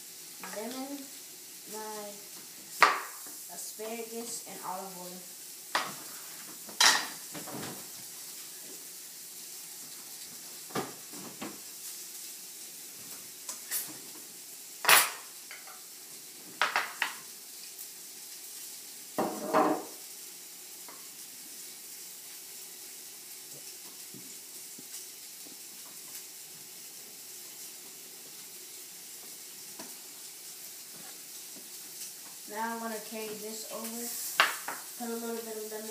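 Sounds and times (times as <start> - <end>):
food sizzling in pans: 0.0 - 35.9
dishes and utensils clinking: 6.8 - 7.2, 14.8 - 15.6.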